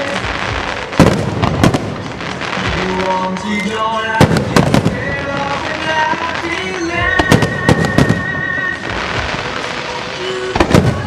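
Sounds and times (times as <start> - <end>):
fireworks bangs: 0.0 - 11.0
slow melodic music: 0.0 - 11.0.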